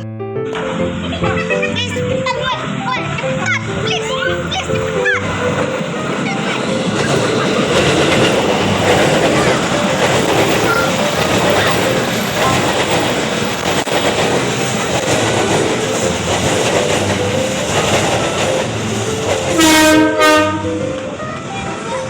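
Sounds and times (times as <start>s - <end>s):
train wheels clattering on rails: 0.6s - 22.0s
loud train horn: 18.8s - 20.9s.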